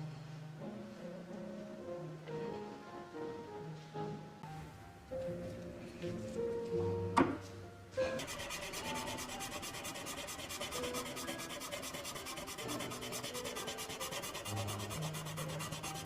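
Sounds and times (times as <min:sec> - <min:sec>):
sanding on brass: 0:08.2 - 0:16.0.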